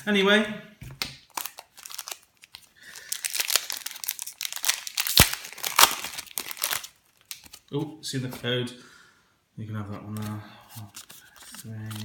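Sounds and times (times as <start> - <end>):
foil wrapper tearing and crinkling: 1.3 - 7.6.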